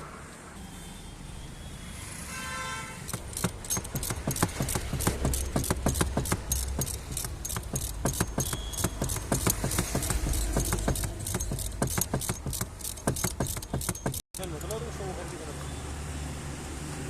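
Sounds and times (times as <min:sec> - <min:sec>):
metallic clicking and clinking: 0:03.0 - 0:14.9.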